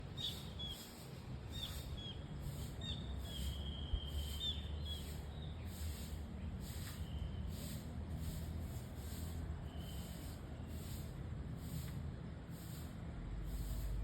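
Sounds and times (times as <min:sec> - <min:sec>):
bird chirping: 0:00.1 - 0:05.9.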